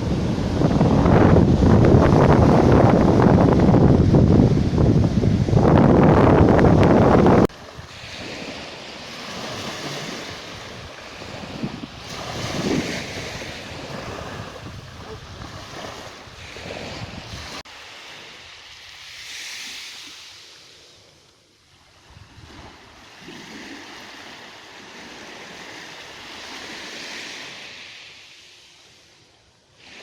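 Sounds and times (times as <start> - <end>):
wind buffeting microphone: 0.0 - 17.6
sea waves washing ashore: 0.0 - 30.0.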